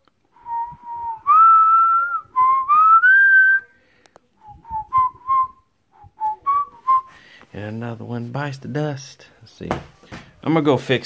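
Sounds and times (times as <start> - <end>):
person whistling a tune: 0.4 - 3.7, 4.4 - 7.2.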